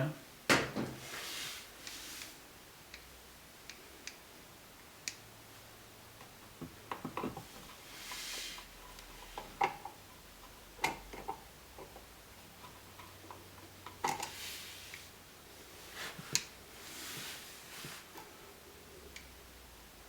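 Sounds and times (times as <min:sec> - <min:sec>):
soft rustles: 0:01.0 - 0:02.4, 0:07.4 - 0:09.4, 0:14.3 - 0:18.4
hand tools clicking and tapping: 0:08.9 - 0:14.4.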